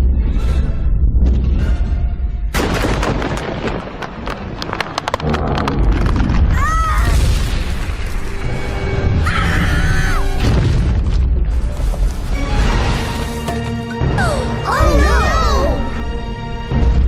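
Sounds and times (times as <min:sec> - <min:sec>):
smashing impacts and booms: 0:02.5 - 0:09.2, 0:10.3 - 0:11.8
dramatic music: 0:06.9 - 0:17.0
shrill creature shriek: 0:09.2 - 0:10.4.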